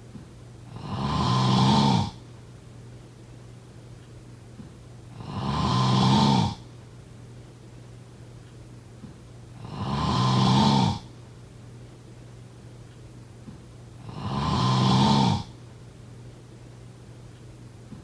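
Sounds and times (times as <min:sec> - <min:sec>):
person snoring: 0:00.7 - 0:02.2, 0:05.2 - 0:06.6, 0:09.6 - 0:11.1, 0:14.0 - 0:15.5.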